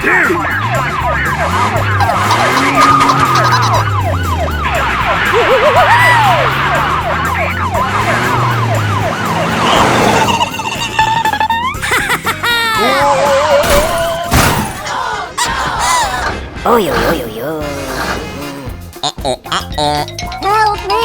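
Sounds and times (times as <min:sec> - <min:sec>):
vehicle engine revving: 0:00.0 - 0:11.8
cartoon police siren wailing: 0:00.0 - 0:14.3.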